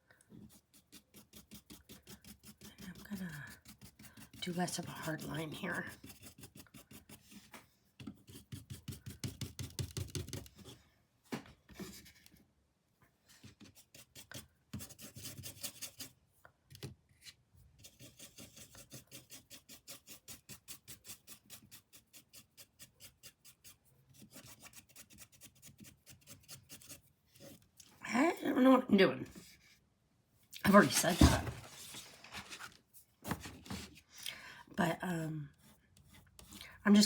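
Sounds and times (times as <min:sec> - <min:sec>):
paintbrush scratching on canvas: 0:00.4 - 0:10.3, 0:13.5 - 0:16.1, 0:17.8 - 0:27.6, 0:30.7 - 0:34.0, 0:35.5 - 0:37.0.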